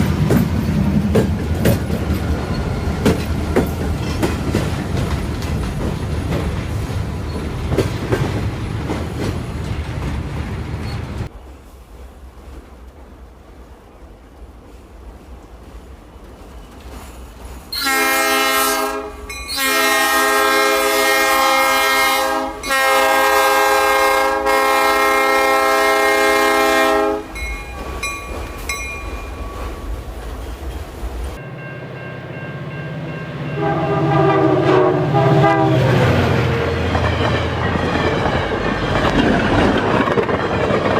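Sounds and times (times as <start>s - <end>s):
train wheels clattering: 0.0s - 13.2s, 27.2s - 33.7s, 36.0s - 40.9s
locomotive air horn blasts: 17.7s - 27.4s, 33.5s - 36.1s.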